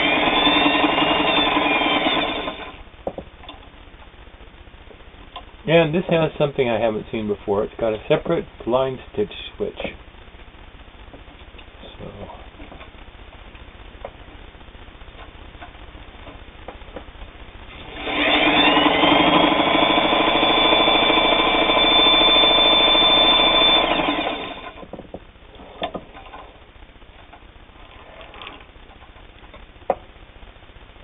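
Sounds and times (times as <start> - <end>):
sewing machine running: 0.0 - 2.8, 17.8 - 24.8.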